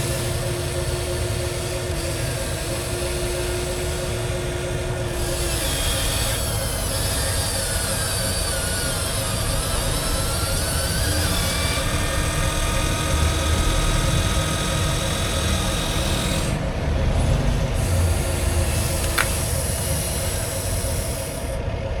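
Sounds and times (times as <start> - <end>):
small electric motors whining: 0.0 - 21.7.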